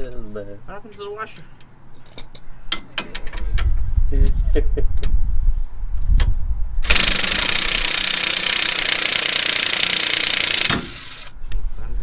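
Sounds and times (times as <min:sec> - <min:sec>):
impact wrench hammering: 0:06.9 - 0:11.3.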